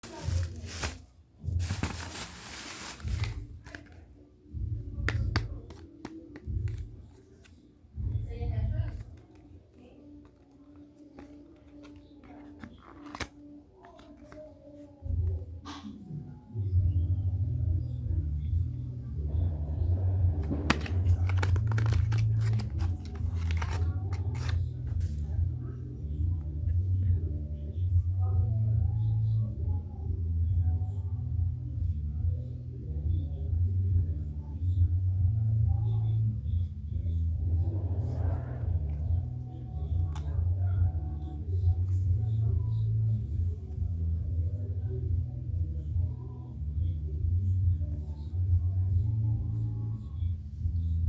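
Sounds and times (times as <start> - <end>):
plastic packaging rustling: 0.0 - 4.0, 20.7 - 24.6
packaging torn and crinkled: 20.7 - 24.6.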